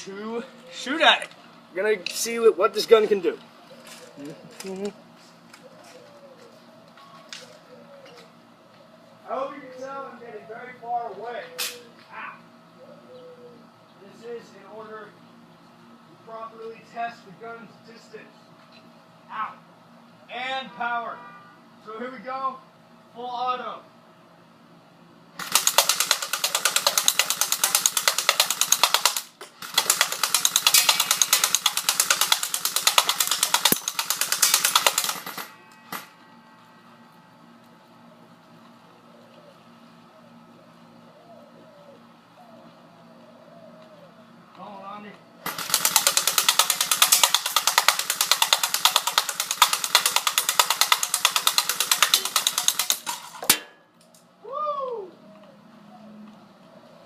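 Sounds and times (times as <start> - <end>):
airsoft gun firing bursts: 25.4 - 35.6, 45.5 - 53.6.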